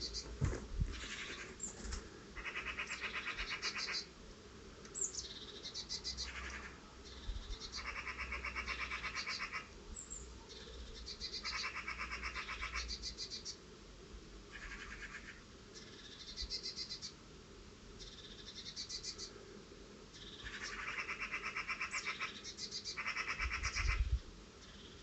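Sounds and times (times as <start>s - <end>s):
birds rattling alarm calls: 0.0s - 4.1s, 7.6s - 9.7s, 11.3s - 13.0s, 20.5s - 24.0s.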